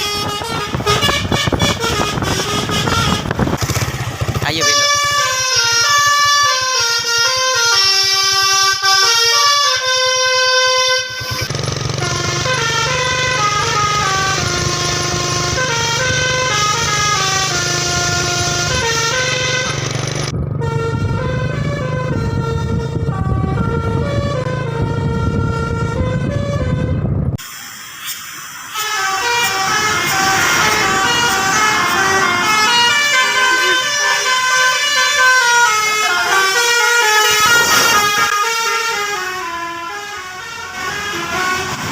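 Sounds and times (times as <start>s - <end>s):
musical air horn tune: 0.0s - 3.4s, 28.7s - 41.8s
engine low hum: 11.0s - 27.4s.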